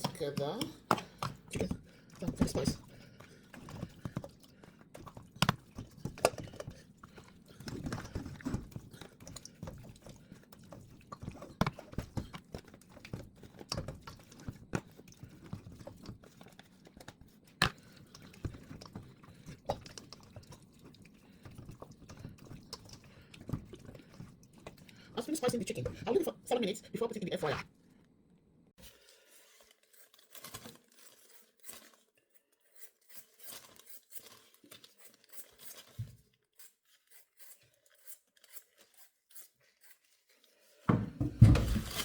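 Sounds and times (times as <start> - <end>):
wet squishing of raw chicken: 1.0 - 25.2.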